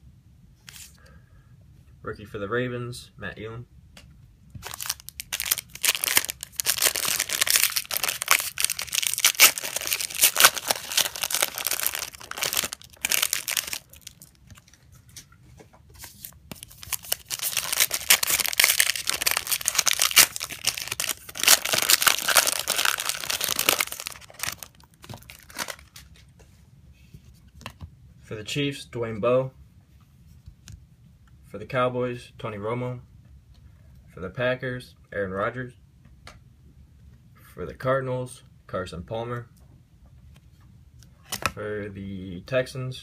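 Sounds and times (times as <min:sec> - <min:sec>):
card pack wrappers crinkling: 0:04.6 - 0:14.8, 0:16.0 - 0:26.2.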